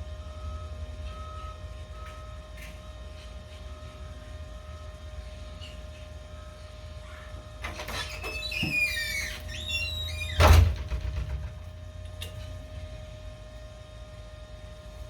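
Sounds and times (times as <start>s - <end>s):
high-pitched squeaks and squeals: 7.8s - 10.4s.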